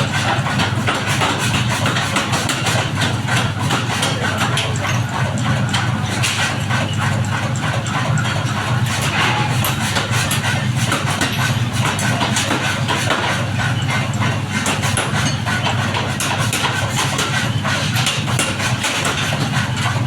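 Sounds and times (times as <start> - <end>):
metallic knocks and clanks: 7.6 - 13.3.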